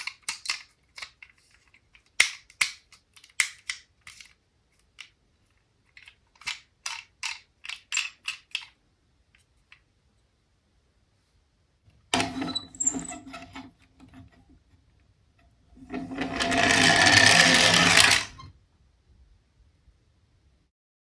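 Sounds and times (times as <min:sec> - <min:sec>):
toy car wheels rattling: 0:15.9 - 0:18.5.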